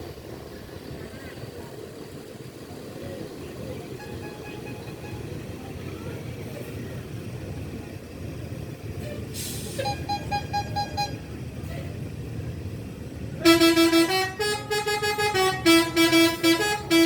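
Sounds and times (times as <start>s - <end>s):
engine and traffic rumble: 0.0s - 17.0s
bus musical air horn tune: 9.0s - 11.2s, 13.4s - 17.0s.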